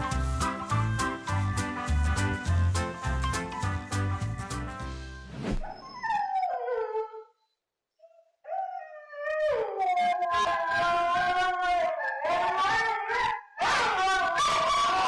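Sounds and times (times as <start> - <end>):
dog howling: 8.5 - 15.0.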